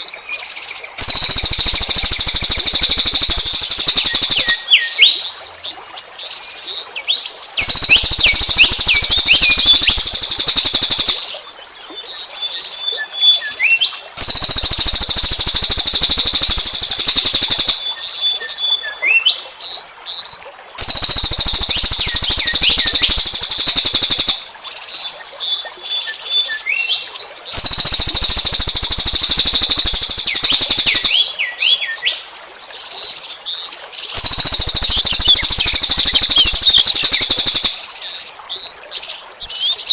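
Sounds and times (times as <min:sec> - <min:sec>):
songbird fast harsh trill: 0:01.0 - 0:05.2, 0:07.6 - 0:11.4, 0:13.7 - 0:18.1, 0:20.8 - 0:24.4, 0:27.6 - 0:31.3, 0:34.0 - 0:38.3
bird chirps sliding downward: 0:07.6 - 0:11.3, 0:20.8 - 0:24.4, 0:27.6 - 0:31.2, 0:34.2 - 0:38.3.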